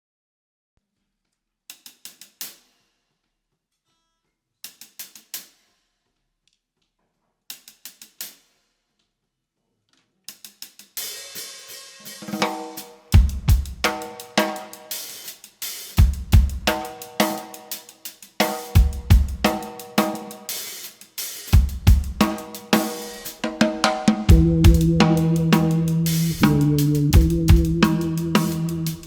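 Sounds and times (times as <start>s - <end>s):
live rock band playing: 24.3s - 29.0s
loud low hit: 24.3s - 29.0s.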